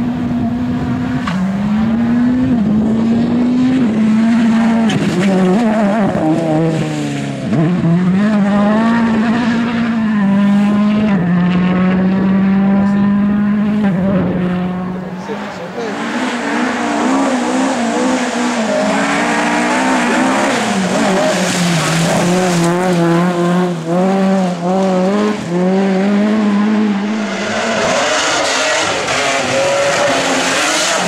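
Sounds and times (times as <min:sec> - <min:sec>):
rally car engine revving: 0:00.0 - 0:31.0.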